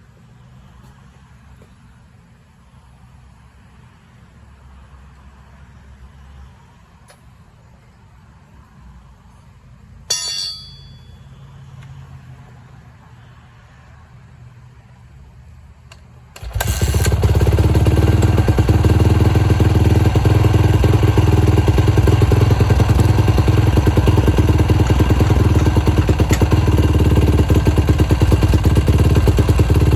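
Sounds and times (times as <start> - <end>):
motorcycle engine starting and running: 15.9 - 29.9.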